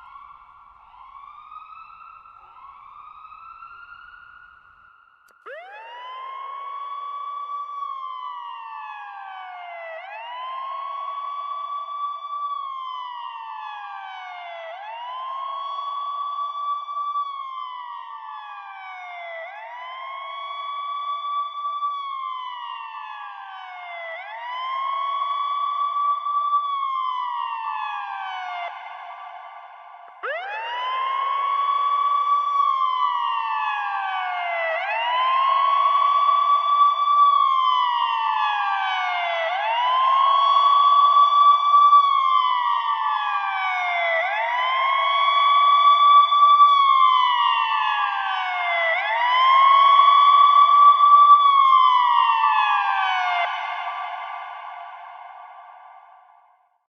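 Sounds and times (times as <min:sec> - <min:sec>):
police car siren wailing: 0:05.4 - 0:06.6, 0:12.5 - 0:15.8, 0:21.9 - 0:25.9, 0:26.6 - 0:56.2.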